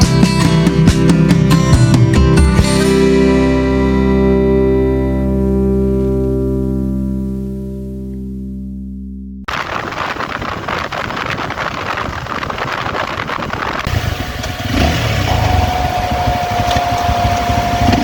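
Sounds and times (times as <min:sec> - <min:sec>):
steady high whine: 0:09.5 - 0:18.0
wind noise on microphone: 0:09.5 - 0:18.0
motorcycle engine: 0:10.8 - 0:18.0.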